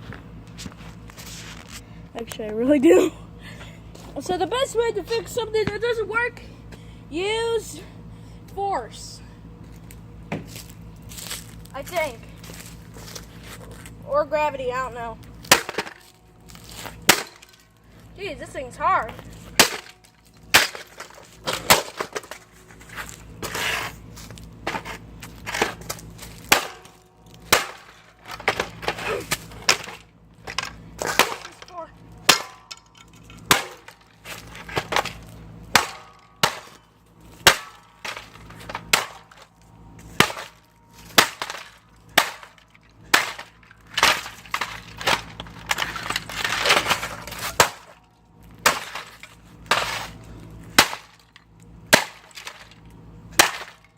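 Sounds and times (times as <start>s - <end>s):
radio being smashed: 37.4s - 50.2s.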